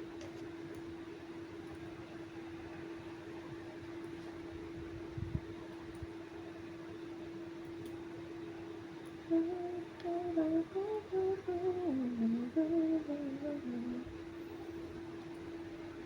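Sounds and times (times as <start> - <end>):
person humming a tune: 9.3 - 14.4.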